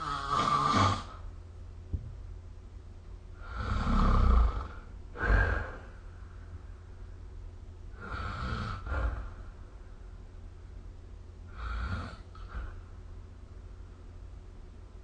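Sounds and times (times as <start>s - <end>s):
person snoring: 0.0s - 1.2s, 3.4s - 6.0s, 8.0s - 9.4s, 11.5s - 12.8s.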